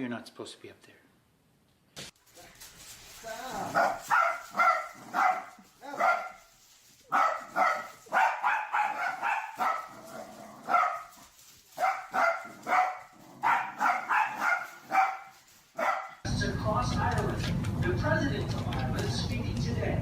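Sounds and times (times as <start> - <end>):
dog barking: 3.6 - 6.5, 7.1 - 16.3.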